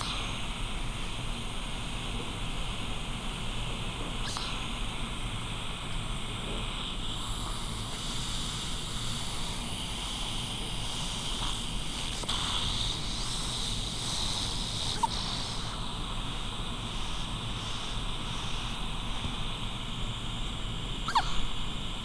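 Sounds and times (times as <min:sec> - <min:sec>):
background hiss: 0:00.0 - 0:22.0
baby hiccups: 0:21.1 - 0:21.5.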